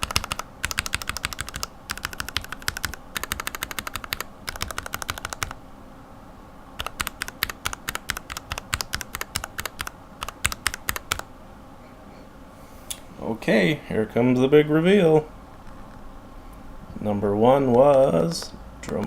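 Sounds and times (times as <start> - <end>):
mechanical keyboard keystrokes clacking: 0.0 - 5.6, 6.8 - 11.3.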